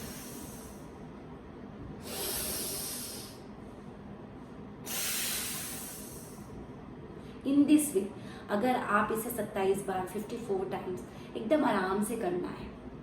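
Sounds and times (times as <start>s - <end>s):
woman breathing through nose: 0.0s - 1.0s, 2.0s - 3.4s, 4.8s - 6.6s.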